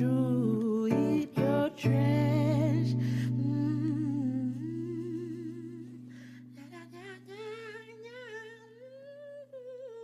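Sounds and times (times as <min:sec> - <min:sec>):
voice humming a melody: 0:00.0 - 0:10.0.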